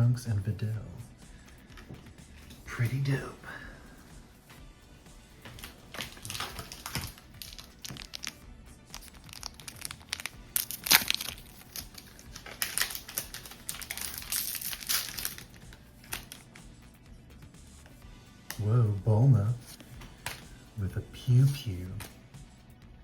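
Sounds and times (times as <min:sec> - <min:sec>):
cards and foil wrapper crinkling: 0:05.4 - 0:16.6, 0:19.7 - 0:20.5.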